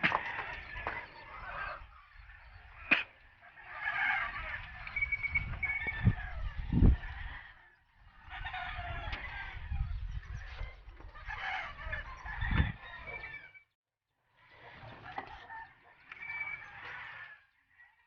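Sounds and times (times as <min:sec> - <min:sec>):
chickens clucking: 0:00.0 - 0:13.6, 0:14.4 - 0:18.0
rooster crowing: 0:03.6 - 0:10.0, 0:11.2 - 0:13.7, 0:14.8 - 0:18.0.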